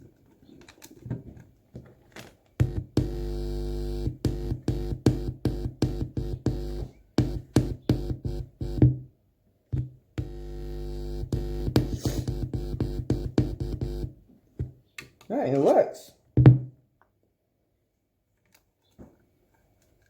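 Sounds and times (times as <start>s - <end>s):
sustained synthesizer chords: 2.6s - 8.8s, 10.2s - 14.1s
electronic music with drum machine beat: 2.6s - 9.0s, 10.2s - 14.2s.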